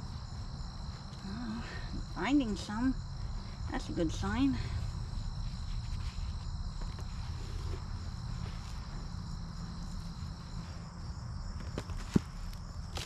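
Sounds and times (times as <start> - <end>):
cricket trill: 0.0 - 13.0
hands rummaging through dry soil: 4.6 - 11.0, 11.6 - 13.0.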